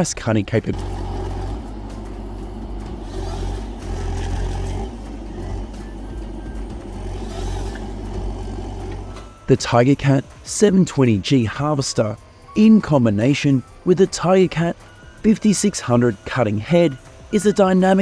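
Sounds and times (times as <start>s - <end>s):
engine low rumble: 0.0s - 18.0s.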